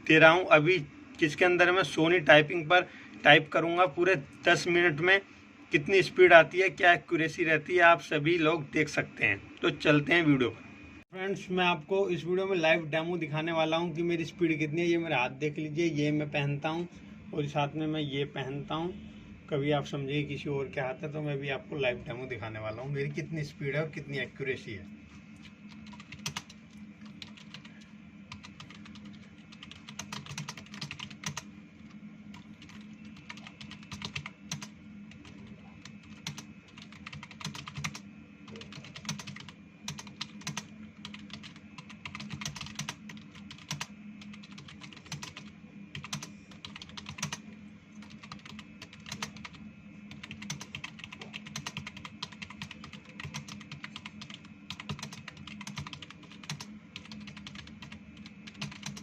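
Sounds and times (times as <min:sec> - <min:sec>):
steady low hum: 0:00.0 - 0:59.0
fast keyboard typing: 0:25.4 - 0:47.4, 0:48.0 - 0:59.0.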